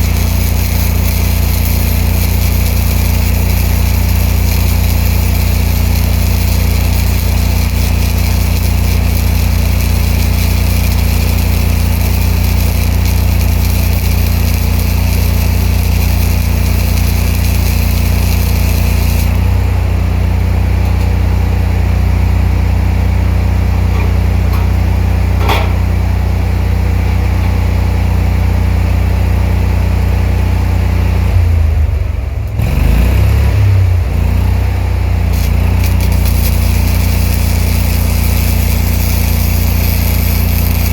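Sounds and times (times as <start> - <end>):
hissing crackle of welding: 0.0 - 19.8, 35.2 - 40.9
welder generator engine running: 0.0 - 40.9.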